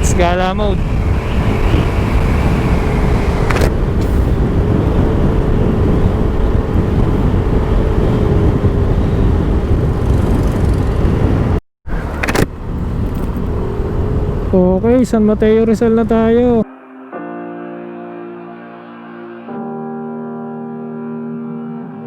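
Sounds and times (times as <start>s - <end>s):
scooter engine hum: 0.0s - 16.6s
wind rush on microphone: 0.0s - 16.6s
sharp click: 3.5s - 4.3s.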